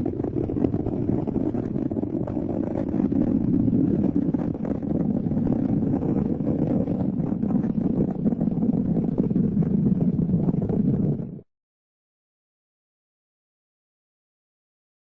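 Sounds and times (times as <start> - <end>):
crackling rumble of rocket explosion: 0.0 - 11.4.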